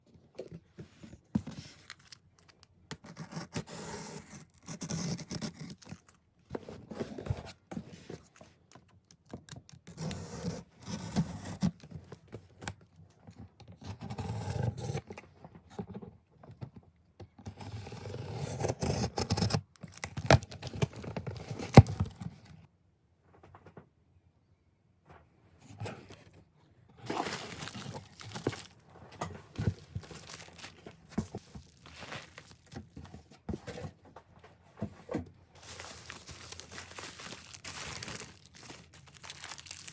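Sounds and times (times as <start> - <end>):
scraping rustling and tearing: 27.0 - 39.9.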